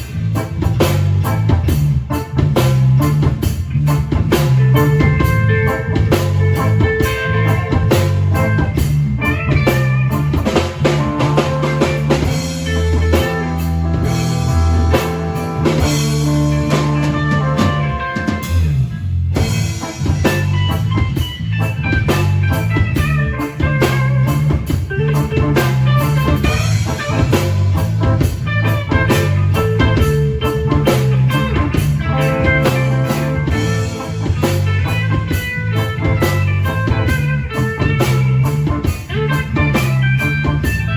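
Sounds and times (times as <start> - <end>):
instrumental band playing: 0.0 - 40.9
prominent bass line: 0.0 - 40.9.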